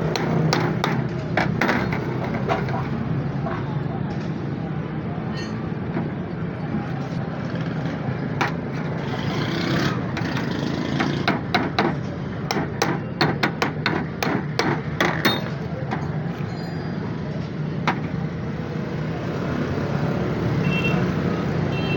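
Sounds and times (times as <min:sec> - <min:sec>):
sharp metallic knocks: 0:00.0 - 0:02.8, 0:09.9 - 0:16.2.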